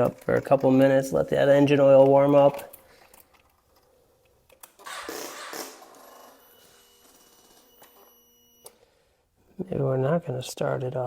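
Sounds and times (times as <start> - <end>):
motorcycle electric starter buzzing: 4.7 - 8.1.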